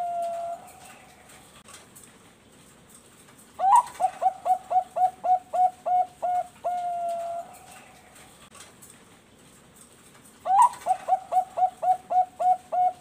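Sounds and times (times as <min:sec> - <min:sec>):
dove cooing: 0:00.0 - 0:01.5, 0:03.6 - 0:08.4, 0:10.4 - 0:13.0.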